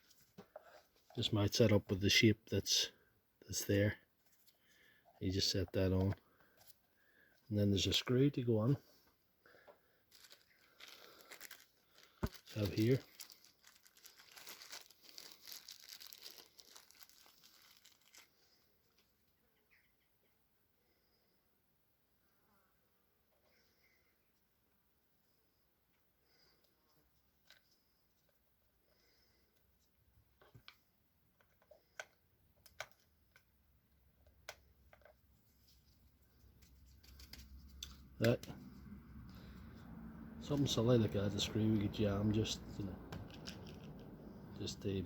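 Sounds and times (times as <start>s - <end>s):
crinkling and rustling of small parts: 3.7s - 19.2s, 26.5s - 39.6s, 40.4s - 45.0s.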